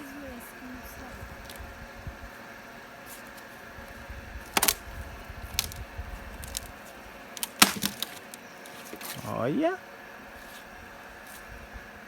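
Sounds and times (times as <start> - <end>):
dry sticks cracking and knocking: 1.4 - 1.6, 3.0 - 9.4.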